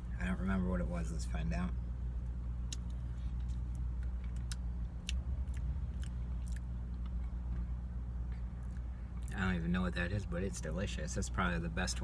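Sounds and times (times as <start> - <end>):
steady low hum: 0.0 - 12.0
person chewing food: 2.6 - 7.5
wet mouth clicks: 2.7 - 3.0.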